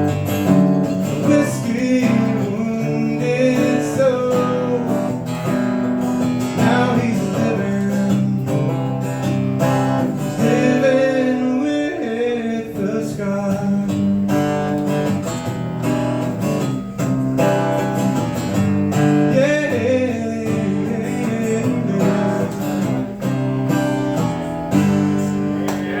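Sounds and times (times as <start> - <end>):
acoustic guitar strummed and picked: 0.0 - 26.0.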